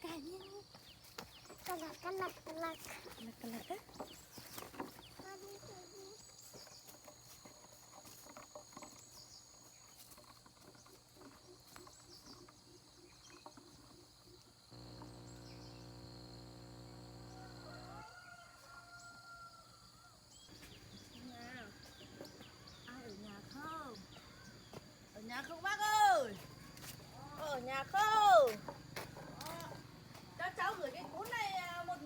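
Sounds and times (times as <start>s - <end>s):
insects buzzing: 0.0s - 32.0s
steady low hum: 14.7s - 18.0s.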